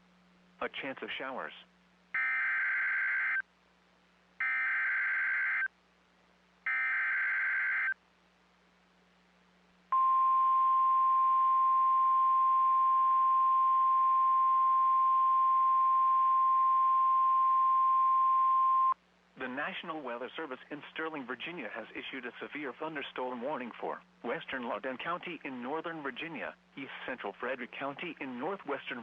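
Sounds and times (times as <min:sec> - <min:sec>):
steady warning alarm tone: 0:04.4 - 0:05.7, 0:06.7 - 0:08.0.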